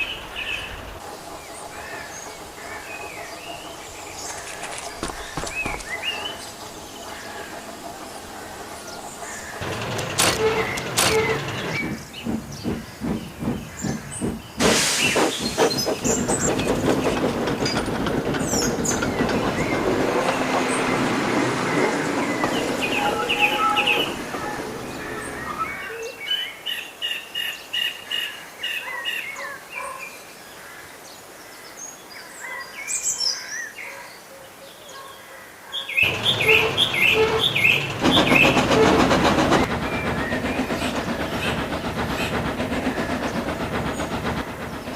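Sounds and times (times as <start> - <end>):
train wheels clickety-clack: 1.0 - 25.8, 36.0 - 44.9.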